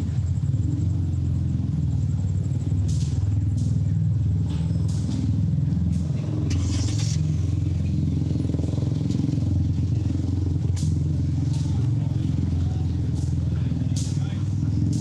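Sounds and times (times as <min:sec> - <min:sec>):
city street traffic rumble: 0:00.0 - 0:15.0
brief hiss: 0:06.5 - 0:07.3.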